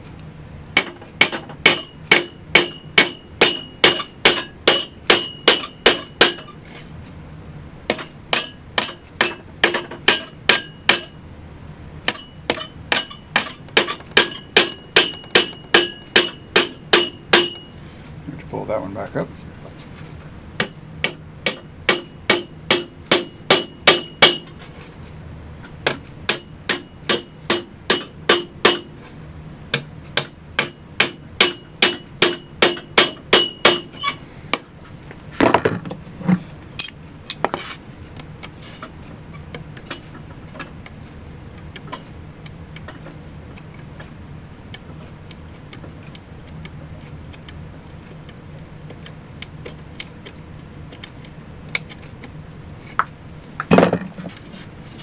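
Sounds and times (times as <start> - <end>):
faint steady hum: 0.0 - 55.0
hammer striking metal: 0.8 - 6.5, 7.9 - 11.2, 12.1 - 17.7, 20.6 - 24.5, 25.8 - 28.9, 29.7 - 33.9.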